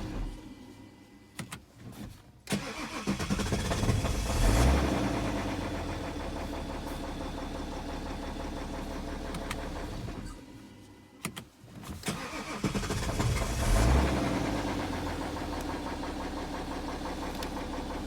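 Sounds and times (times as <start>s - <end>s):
diesel engine starting and idling: 2.5s - 10.6s, 12.0s - 18.0s.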